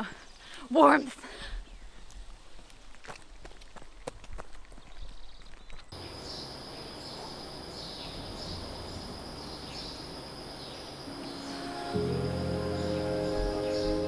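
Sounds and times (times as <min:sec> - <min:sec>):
steady high hiss: 0:06.0 - 0:14.0.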